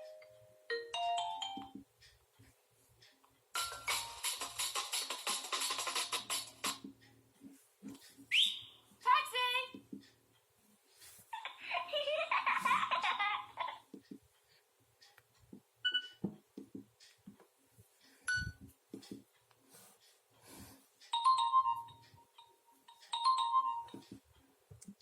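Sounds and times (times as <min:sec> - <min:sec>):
phone ringtone: 0:00.0 - 0:01.8, 0:03.6 - 0:04.7, 0:21.1 - 0:24.0.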